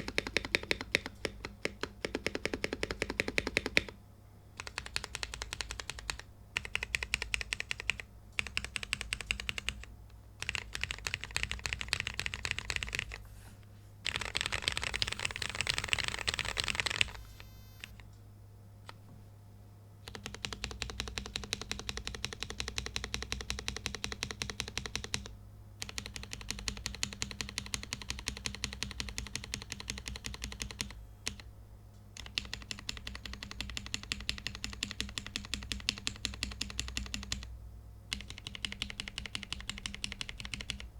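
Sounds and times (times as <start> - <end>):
mechanical keyboard typing: 0.0 - 4.0, 4.6 - 13.2, 14.0 - 18.0, 20.0 - 31.5, 32.2 - 37.5, 38.1 - 40.9.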